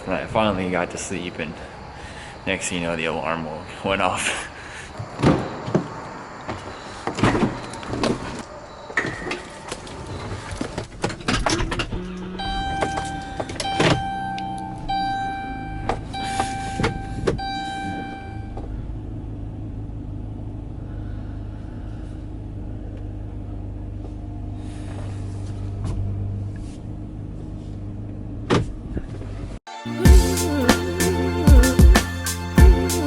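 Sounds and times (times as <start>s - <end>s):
car engine and road rumble: 4.7s - 33.0s
steady electronic tone: 12.0s - 18.6s.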